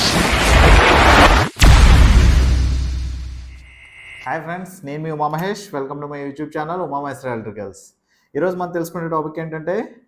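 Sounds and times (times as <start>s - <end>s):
explosion crack and booming rumble: 0.0s - 3.5s
loud rushing noise: 0.0s - 4.2s.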